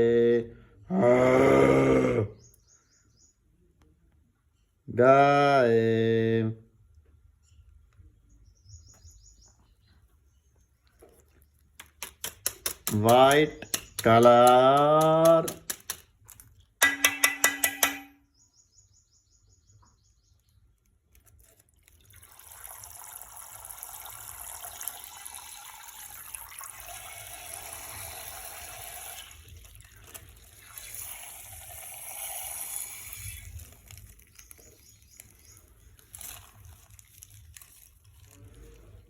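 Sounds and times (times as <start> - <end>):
water pouring and trickling: 20.8 - 39.0.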